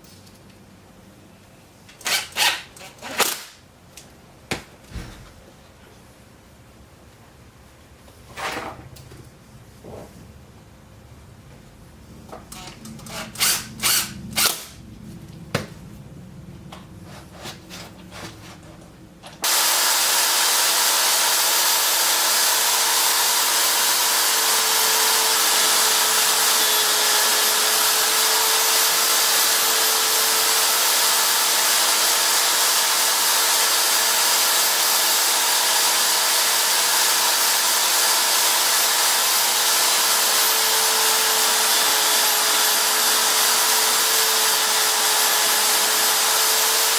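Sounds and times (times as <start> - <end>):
electric drill whining: 19.4 - 46.9.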